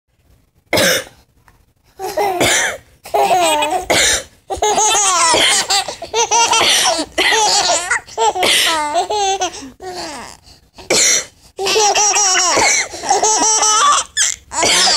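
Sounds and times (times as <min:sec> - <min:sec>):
woman coughing: 0:00.8 - 0:01.1, 0:02.4 - 0:02.8, 0:03.9 - 0:04.3, 0:05.3 - 0:05.7, 0:06.6 - 0:07.6, 0:08.4 - 0:08.8, 0:10.9 - 0:11.3, 0:12.5 - 0:13.0, 0:14.6 - 0:14.9
babies laughing: 0:03.1 - 0:03.9, 0:04.5 - 0:09.7, 0:11.6 - 0:14.9.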